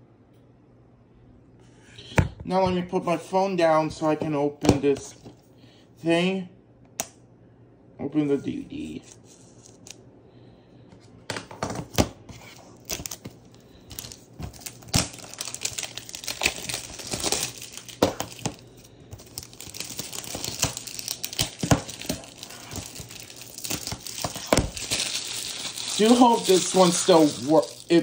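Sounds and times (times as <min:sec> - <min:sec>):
plastic wrap crinkling and tearing: 0:12.4 - 0:28.0.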